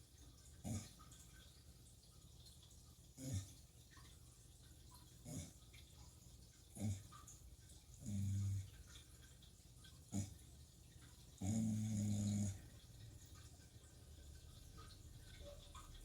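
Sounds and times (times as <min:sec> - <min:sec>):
dog snoring: 0:08.0 - 0:08.7, 0:11.4 - 0:12.7.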